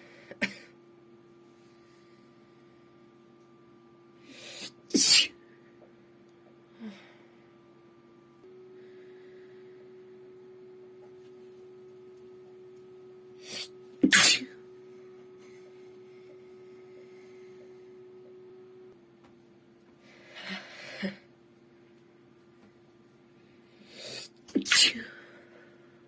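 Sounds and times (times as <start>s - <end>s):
computer hum: 0.0s - 20.2s
sharp inhale: 4.2s - 4.8s, 23.8s - 24.3s
woman sneezing: 4.5s - 5.3s, 13.5s - 14.6s, 24.1s - 25.2s.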